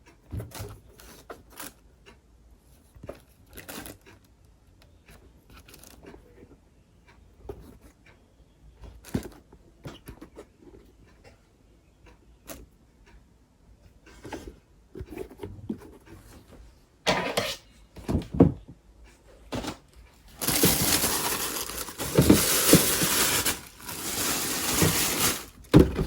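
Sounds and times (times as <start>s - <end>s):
packaging rustling and crinkling: 20.3s - 26.0s.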